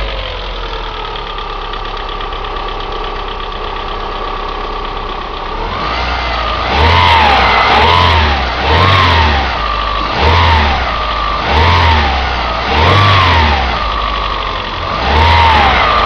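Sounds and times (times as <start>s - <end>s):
petrol engine idling and revving: 0.0s - 16.0s
engine whine: 5.4s - 16.0s.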